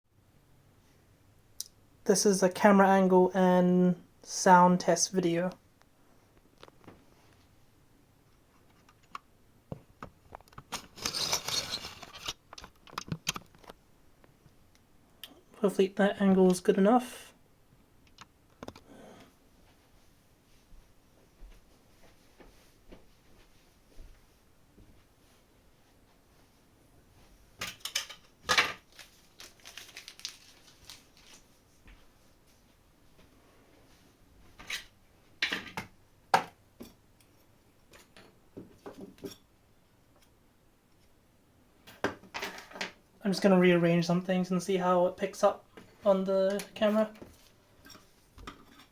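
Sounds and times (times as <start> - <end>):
crinkling and rustling: 8.3 - 14.6, 21.6 - 33.3
rustling or scraping: 10.7 - 13.7.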